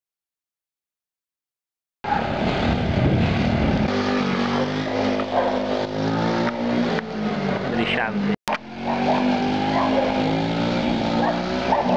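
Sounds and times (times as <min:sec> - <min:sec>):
small motorbike engine running: 0:08.5 - 0:11.9.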